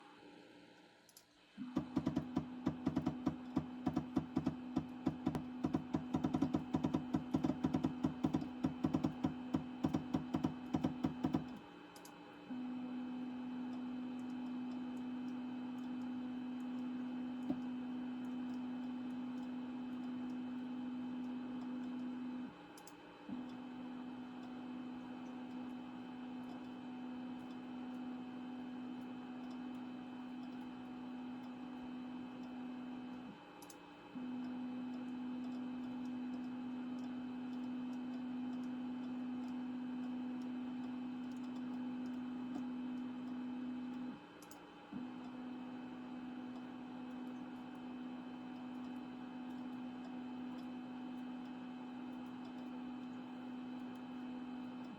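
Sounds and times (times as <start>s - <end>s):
mechanical hum: 0.0s - 54.9s.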